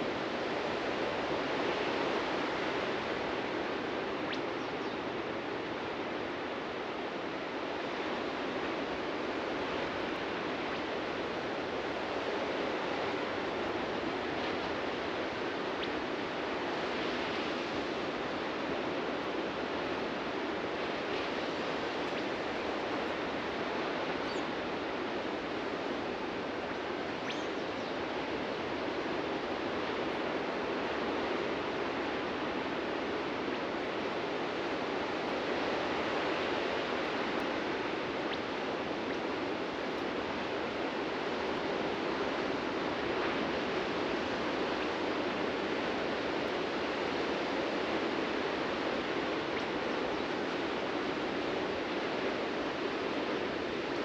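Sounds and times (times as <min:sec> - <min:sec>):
surf breaking on a beach: 0:28.0 - 0:54.0.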